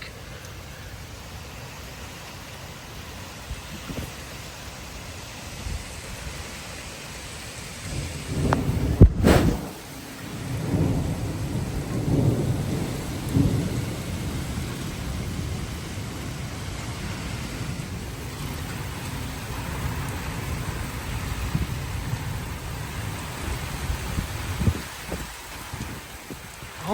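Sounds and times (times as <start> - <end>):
steady rain: 0.0 - 26.9
rolling thunder rumbles: 7.8 - 26.9
thunder crack: 7.9 - 16.4.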